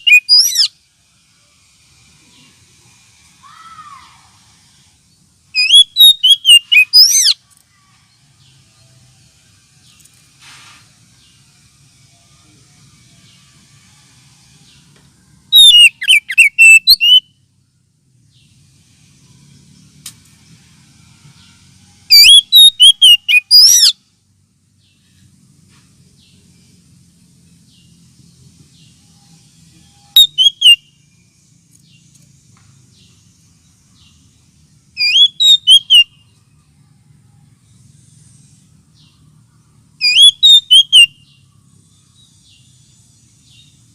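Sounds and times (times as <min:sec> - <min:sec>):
bird singing whistled notes: 0:00.0 - 0:00.8, 0:05.5 - 0:07.5, 0:15.5 - 0:17.5, 0:22.1 - 0:24.0, 0:27.7 - 0:32.1, 0:34.9 - 0:36.4, 0:40.0 - 0:43.9.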